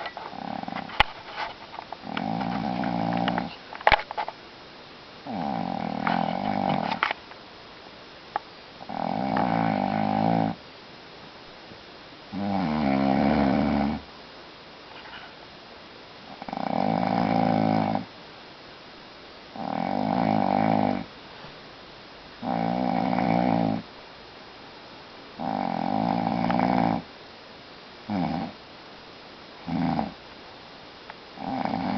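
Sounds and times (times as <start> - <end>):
man snoring with rattling snores: 0.0 - 1.1, 2.0 - 4.0, 5.2 - 7.2, 8.8 - 10.6, 12.3 - 14.1, 16.3 - 18.1, 19.6 - 21.1, 22.4 - 23.8, 25.4 - 27.1, 28.1 - 28.6, 29.6 - 30.2, 31.4 - 31.9.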